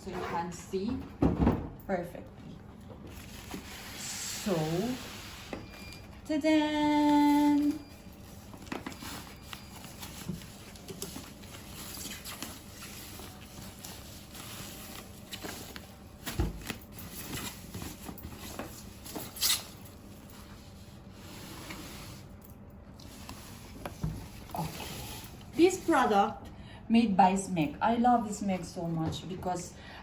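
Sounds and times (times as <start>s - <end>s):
crinkling rustle: 7.1s - 20.8s
packaging rustling: 7.6s - 20.1s.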